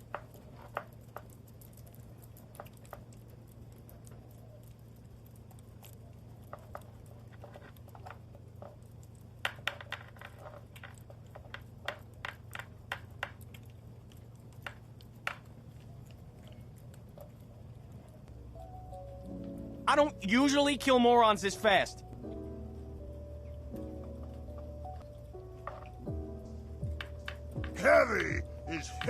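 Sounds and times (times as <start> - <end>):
cat chewing food: 0.0 - 19.8
steady low hum: 21.2 - 29.0.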